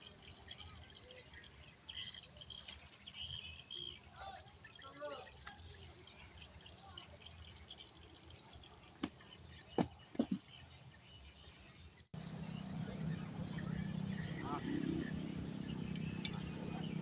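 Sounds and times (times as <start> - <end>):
high insect drone: 0.0 - 17.0
small birds chirping: 0.0 - 17.0
low hum: 12.2 - 17.0.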